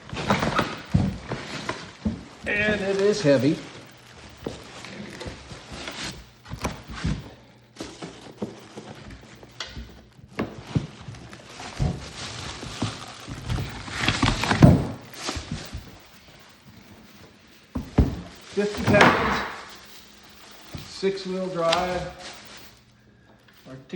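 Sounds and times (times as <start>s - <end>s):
cardboard packing rustling: 0.0s - 23.7s
knocks and thuds: 17.7s - 19.7s.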